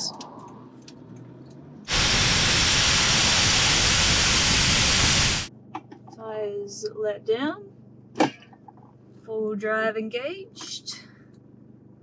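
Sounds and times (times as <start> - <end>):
air hissing out of tyre: 1.9 - 5.5.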